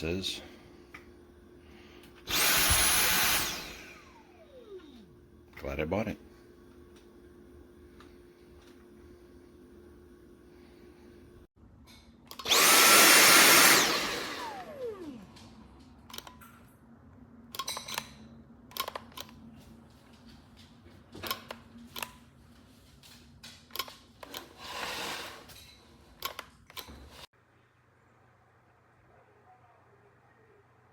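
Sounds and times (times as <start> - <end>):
vacuum motor whining: 1.8 - 5.8, 12.4 - 15.7.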